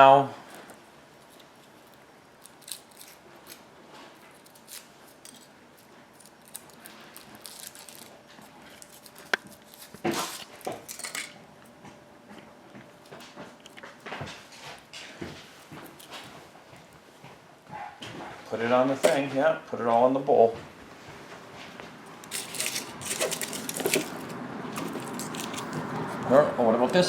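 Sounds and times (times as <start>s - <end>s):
foil wrapper crinkling: 0.6s - 11.0s, 22.2s - 26.0s
rustling: 21.0s - 26.3s.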